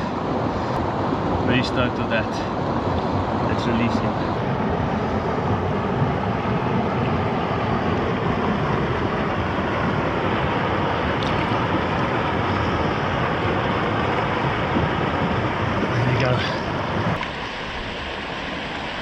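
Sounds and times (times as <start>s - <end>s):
river water rushing: 0.0s - 19.0s
wind: 0.0s - 19.0s.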